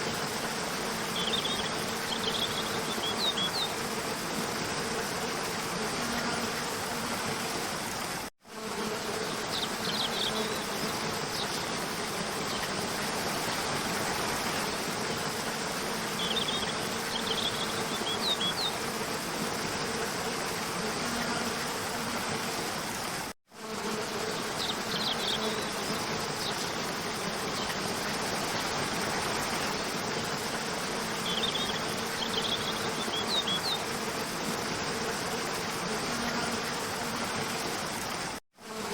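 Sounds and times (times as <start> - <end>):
stream water splashing over rocks: 10.5 - 16.6, 26.1 - 32.0.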